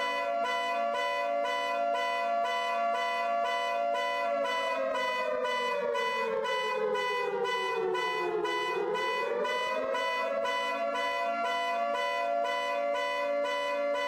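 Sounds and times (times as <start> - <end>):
pulsing high alarm tones: 0.0 - 14.0
sliding siren tone: 0.0 - 14.0.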